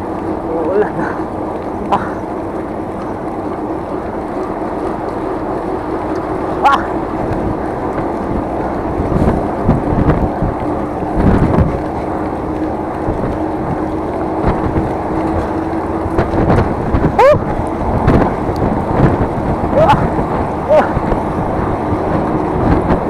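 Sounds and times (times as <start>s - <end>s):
vehicle drone: 0.0s - 23.0s
wind buffeting microphone: 0.0s - 23.0s
person yelling: 6.6s - 6.9s, 17.2s - 17.5s, 19.8s - 20.1s, 20.7s - 21.0s.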